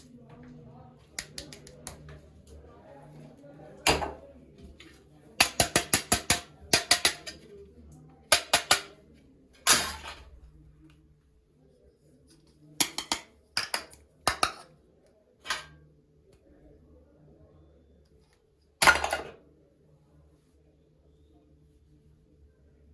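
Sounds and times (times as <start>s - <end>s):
toy kitchen pieces clicking: 5.4s - 7.4s, 8.3s - 8.9s, 12.8s - 14.6s.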